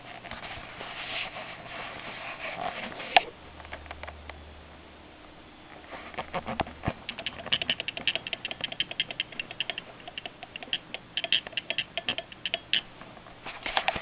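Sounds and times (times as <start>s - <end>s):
telegraph sounder clicking: 7.1s - 12.9s.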